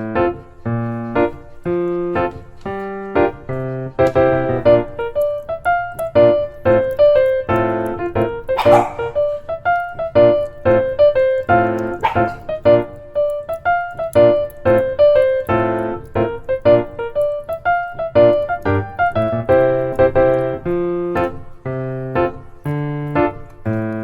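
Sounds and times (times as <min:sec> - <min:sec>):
bouncy piano melody: 0:00.0 - 0:24.0.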